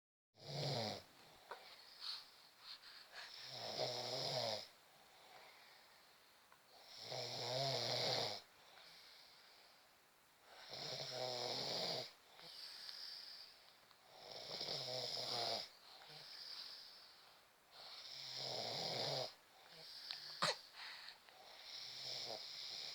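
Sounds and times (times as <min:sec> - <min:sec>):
soft breathing: 0:01.1 - 0:04.0, 0:04.6 - 0:06.5, 0:12.2 - 0:13.8, 0:15.7 - 0:18.1, 0:19.5 - 0:21.7.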